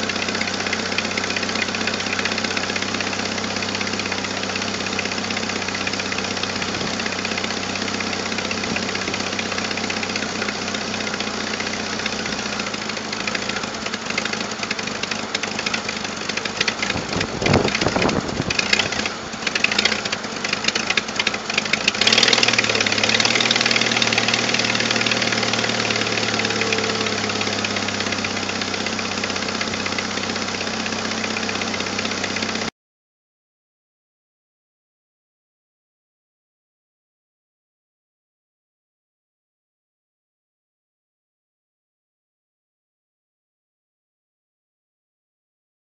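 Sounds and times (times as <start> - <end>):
car engine idling: 0.0 - 32.7.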